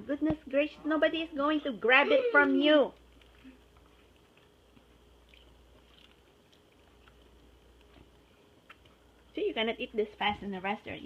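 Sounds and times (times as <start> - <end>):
faint soft chewing: 2.8 - 9.4.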